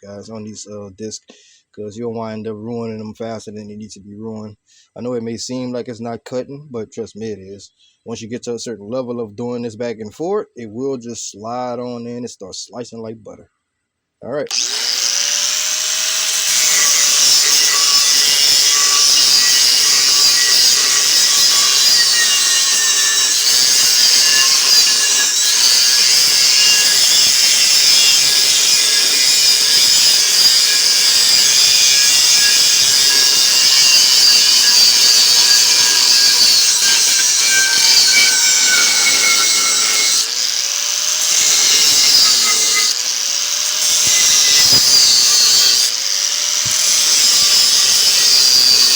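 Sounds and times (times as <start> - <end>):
angle grinder cutting steel: 14.5 - 48.9.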